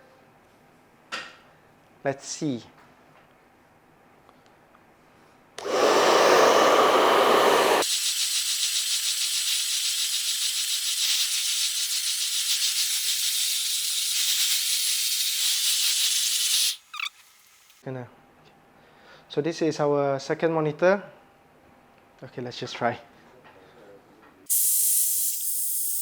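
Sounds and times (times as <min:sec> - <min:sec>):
hairdryer blowing air: 0:05.6 - 0:08.0.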